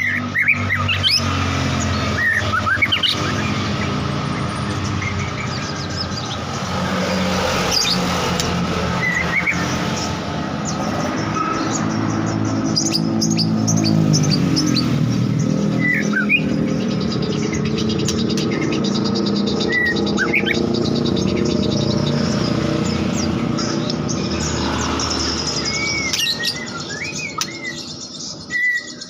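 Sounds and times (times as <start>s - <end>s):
vehicle engine humming: 0.0s - 29.0s
songbird chirps and whistles: 15.6s - 22.3s, 23.2s - 29.0s.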